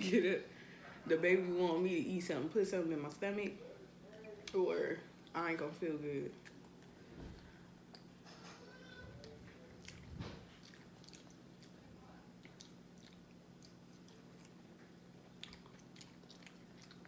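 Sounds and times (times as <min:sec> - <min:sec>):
chewing food close-up: 0:08.8 - 0:17.0.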